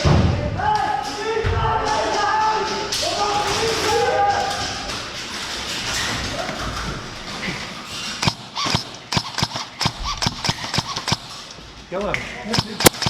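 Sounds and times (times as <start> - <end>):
sharp clicks: 8.1 - 13.0.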